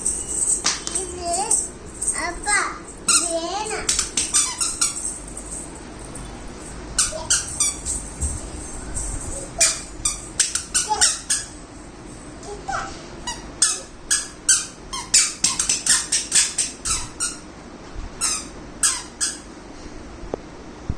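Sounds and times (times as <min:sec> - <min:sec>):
squeaky shoes squeaking: 0:03.0 - 0:05.2, 0:07.0 - 0:11.7, 0:13.2 - 0:17.5, 0:18.2 - 0:19.5.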